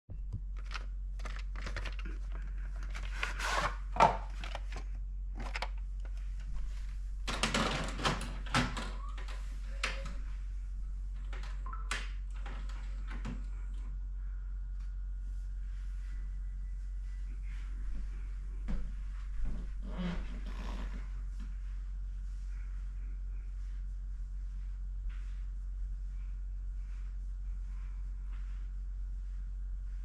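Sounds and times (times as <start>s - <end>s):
low electrical hum: 0.1s - 30.0s.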